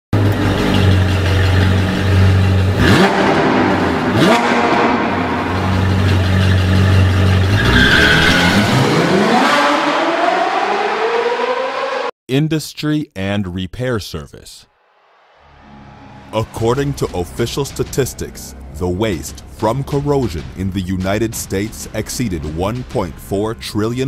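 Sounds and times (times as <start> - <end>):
rising whine: 0.2 - 12.1, 14.9 - 16.6.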